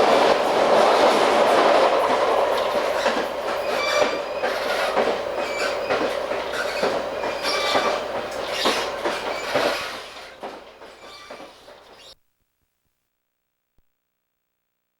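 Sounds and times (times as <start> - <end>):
train rumble: 0.0 - 12.2
train wheels clicking over joints: 0.0 - 12.2
high wheel squeal: 3.0 - 12.2.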